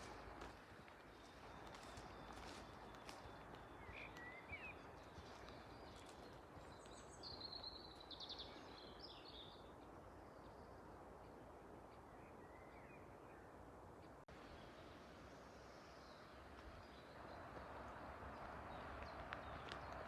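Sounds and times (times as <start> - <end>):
small bird calls: 0.0 - 20.0
steady low hiss: 8.4 - 19.6.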